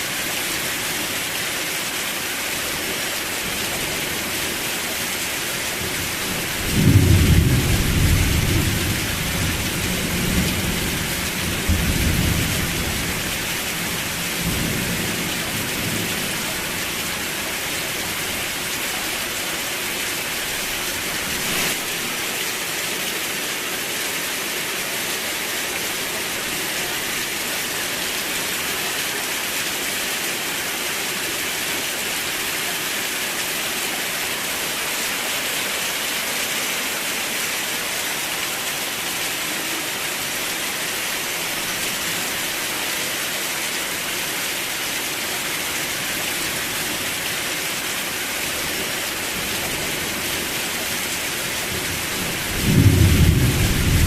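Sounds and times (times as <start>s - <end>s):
heavy rain hissing: 0.0s - 54.0s
thunder rumbling: 52.2s - 54.0s.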